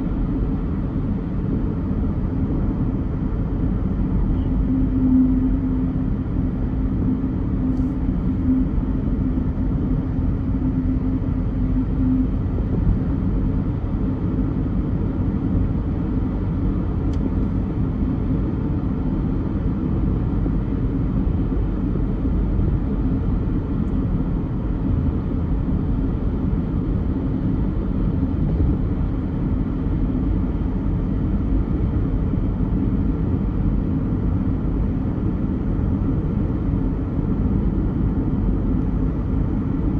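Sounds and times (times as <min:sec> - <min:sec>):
steady hum: 0:00.0 - 0:39.9.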